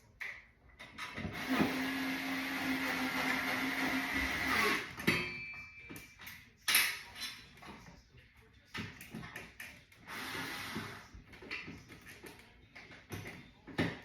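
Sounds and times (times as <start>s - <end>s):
power drill running: 1.3s - 5.0s, 10.1s - 11.0s.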